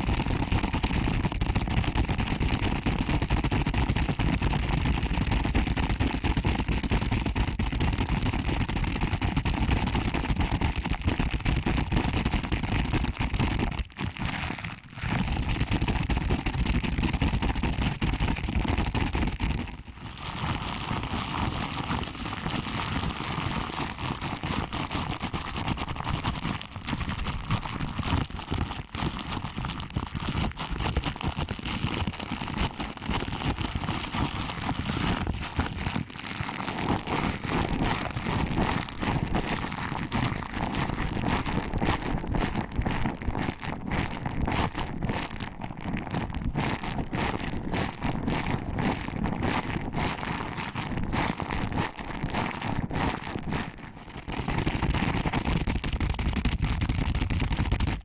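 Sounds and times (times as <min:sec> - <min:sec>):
fingers rubbing microphone: 0:13.4 - 0:15.7, 0:23.8 - 0:55.4.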